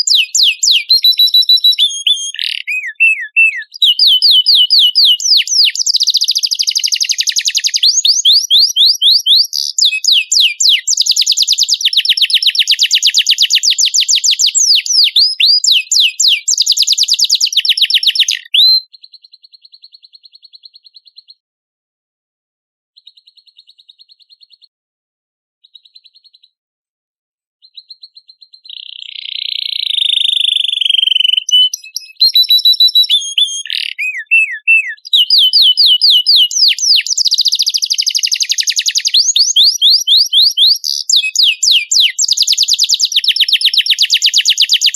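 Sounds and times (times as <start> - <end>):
faint high bird trill: 0.0 - 21.4, 27.6 - 44.0
songbird trilling: 0.0 - 21.4, 27.6 - 44.9.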